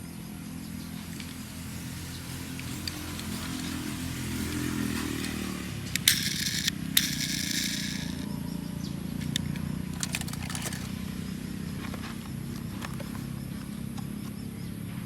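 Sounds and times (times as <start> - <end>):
steady low hum: 0.0 - 15.0
sharp clicks: 2.4 - 8.4, 9.2 - 14.2
rustling: 9.2 - 14.4.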